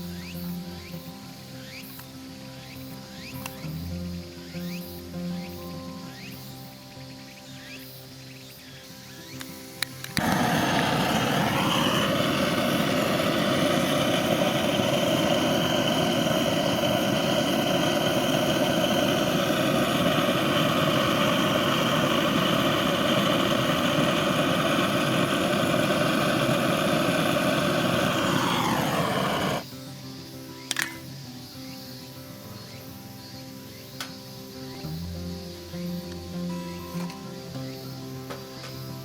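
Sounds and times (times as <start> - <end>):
motor running: 10.1 - 29.6.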